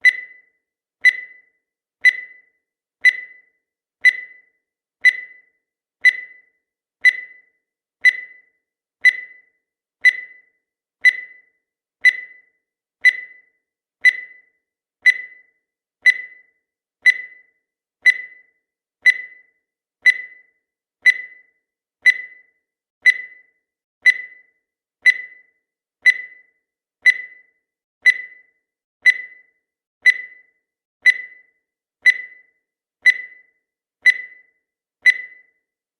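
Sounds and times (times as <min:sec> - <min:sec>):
high-pitched timer beeps: 0:00.0 - 0:35.8.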